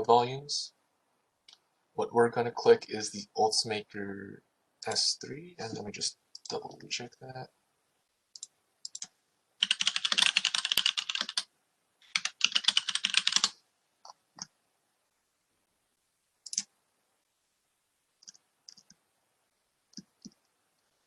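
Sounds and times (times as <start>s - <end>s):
typing on computer keyboard: 8.4s - 13.5s, 16.5s - 16.7s.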